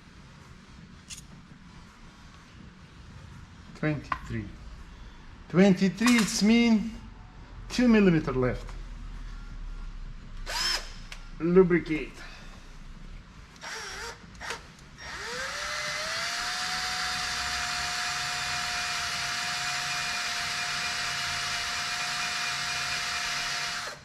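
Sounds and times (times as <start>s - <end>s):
power drill boring through steel: 10.4s - 11.0s, 13.6s - 24.0s.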